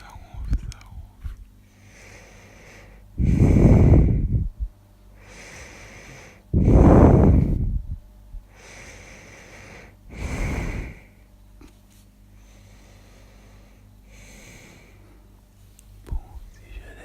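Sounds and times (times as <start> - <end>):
soft breathing: 0.0 - 17.0.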